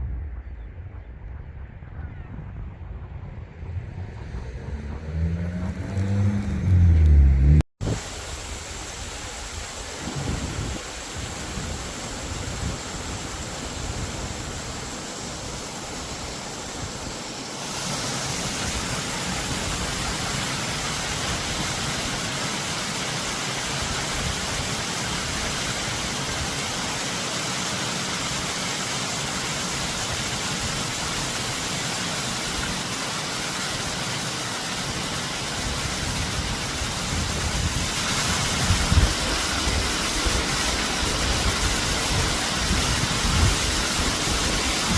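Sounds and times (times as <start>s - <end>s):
wind buffeting microphone: 0.0s - 6.6s, 36.0s - 44.9s
high wind rushing: 0.0s - 20.2s, 35.6s - 44.9s.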